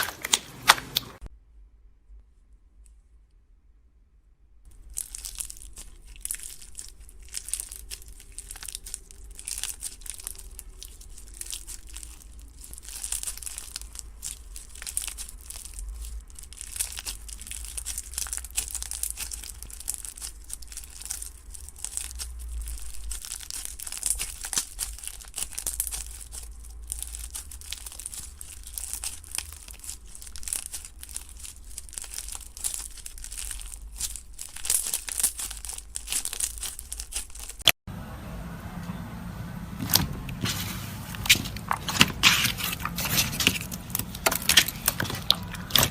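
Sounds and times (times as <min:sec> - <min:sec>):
slime crackling and popping: 0:04.7 - 0:37.8, 0:41.2 - 0:45.9
low handling rumble: 0:37.9 - 0:45.9.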